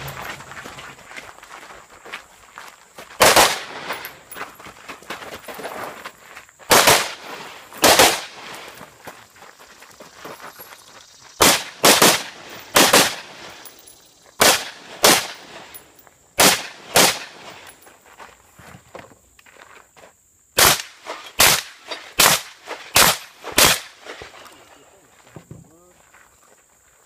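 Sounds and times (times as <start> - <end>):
rifle shots: 3.2 - 4.1, 6.7 - 8.6, 11.4 - 13.5, 14.4 - 15.6, 16.4 - 17.5, 20.6 - 24.1.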